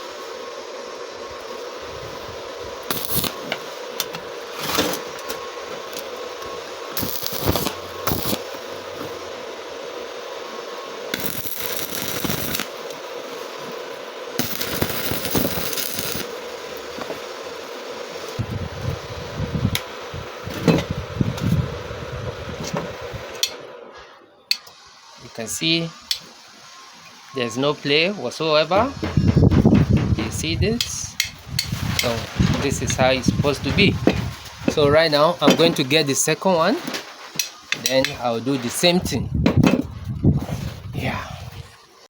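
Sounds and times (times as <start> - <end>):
welding crackle: 0.0 - 23.8, 24.5 - 39.2
welder hum: 0.0 - 42.0.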